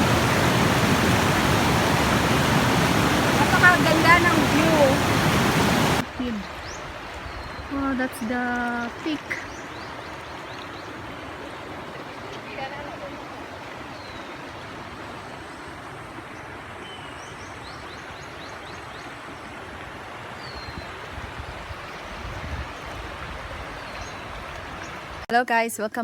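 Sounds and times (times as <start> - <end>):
wind rumble on microphone: 20.5 - 25.2.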